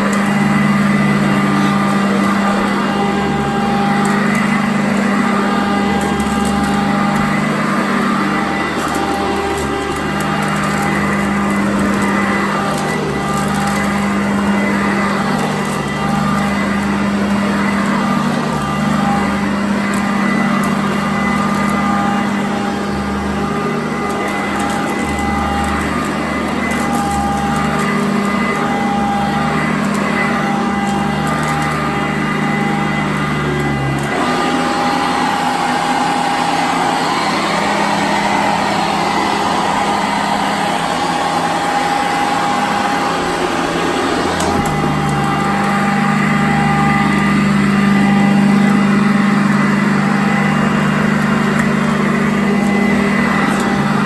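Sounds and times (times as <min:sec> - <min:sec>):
upright vacuum cleaner running: 0:00.0 - 0:54.0.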